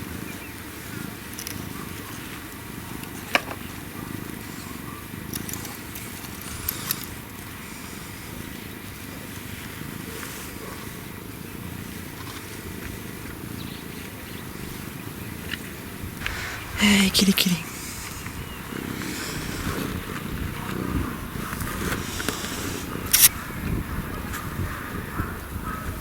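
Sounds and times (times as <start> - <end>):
kitten purring: 0.0 - 26.0
sharp clicks: 22.2 - 23.3.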